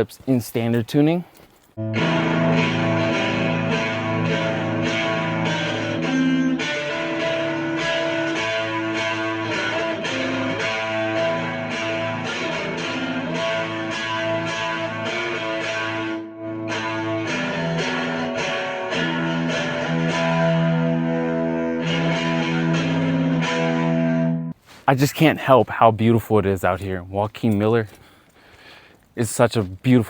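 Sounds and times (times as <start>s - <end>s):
fuzz electric guitar strumming: 1.8s - 24.5s.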